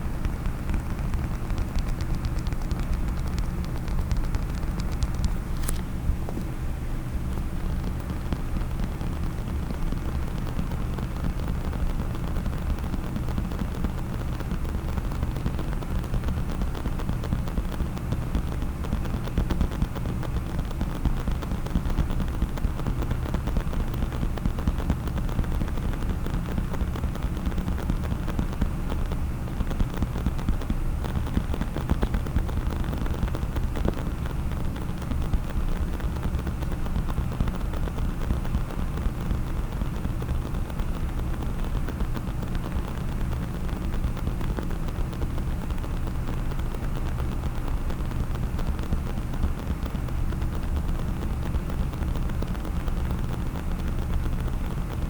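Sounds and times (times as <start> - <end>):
fast tapping on a case: 0.0 - 6.5.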